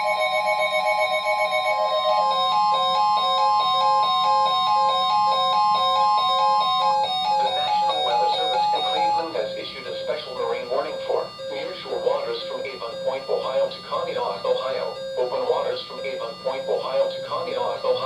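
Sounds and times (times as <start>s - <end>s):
fast warbling alarm: 0.0s - 18.0s
steady high attention tone: 0.0s - 18.0s.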